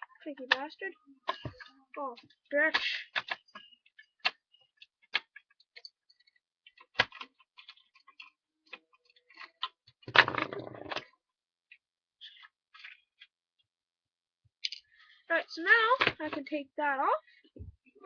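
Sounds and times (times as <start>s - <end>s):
plastic parts clicking: 0.0s - 13.3s.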